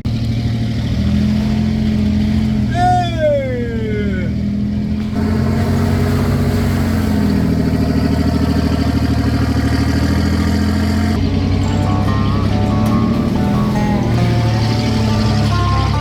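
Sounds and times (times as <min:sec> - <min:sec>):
vehicle engine running: 0:00.0 - 0:16.0.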